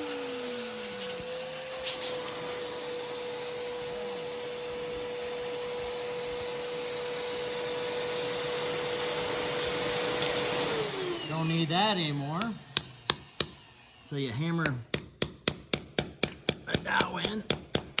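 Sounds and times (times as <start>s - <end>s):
vacuum cleaner motor whine: 0.0s - 14.3s.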